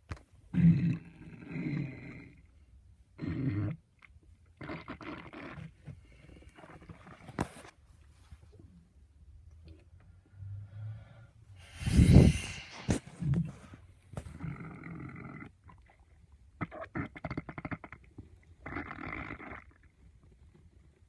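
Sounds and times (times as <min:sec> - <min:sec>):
stomach growling: 0:00.5 - 0:02.5, 0:03.2 - 0:07.6, 0:11.8 - 0:21.0.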